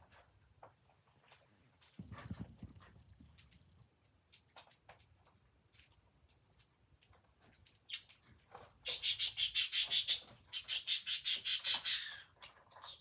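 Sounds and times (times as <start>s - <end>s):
budgerigar chirping: 8.9s - 12.2s.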